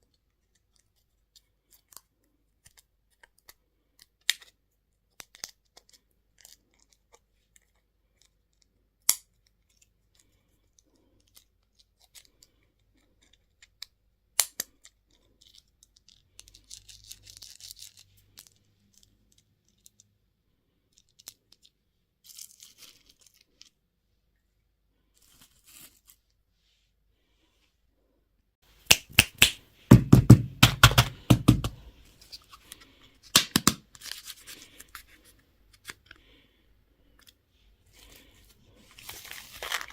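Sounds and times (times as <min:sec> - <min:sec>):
wrapper tearing and crinkling: 0:38.9 - 0:39.9.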